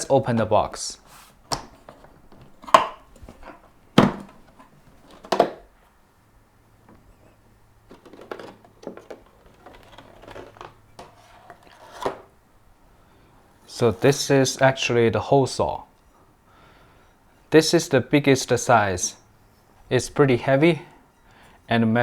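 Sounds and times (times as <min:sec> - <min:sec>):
packaging rustling: 0:07.9 - 0:12.3.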